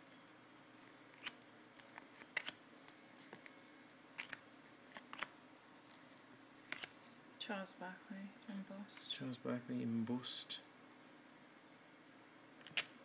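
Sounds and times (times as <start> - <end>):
trading cards clicking: 1.2 - 2.6, 4.2 - 5.3, 6.6 - 7.0.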